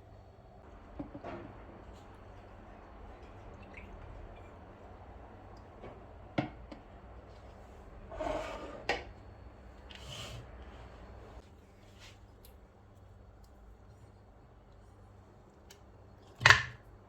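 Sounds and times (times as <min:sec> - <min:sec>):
rubbing or scraping: 0:08.1 - 0:09.0.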